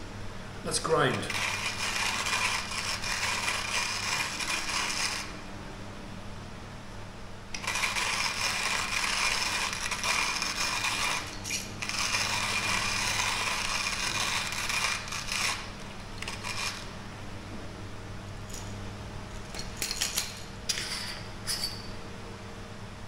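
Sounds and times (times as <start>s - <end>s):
hand coffee grinder crunching beans: 1.1s - 5.3s, 7.6s - 16.9s.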